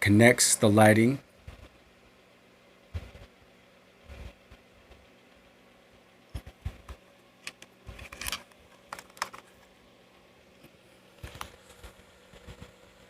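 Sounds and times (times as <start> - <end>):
plastic parts clicking: 7.4 - 9.5.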